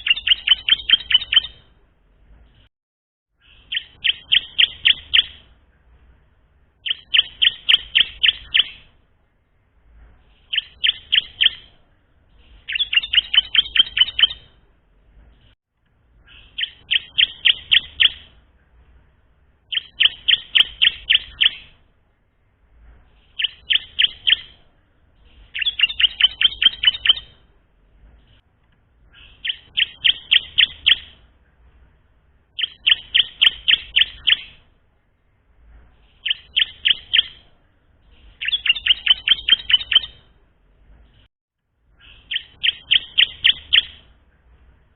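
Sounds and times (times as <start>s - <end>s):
bird singing sharp chip notes: 0.0s - 1.6s, 6.8s - 8.9s, 12.7s - 14.5s, 19.7s - 21.8s, 25.4s - 27.4s, 32.6s - 34.6s, 38.1s - 40.2s.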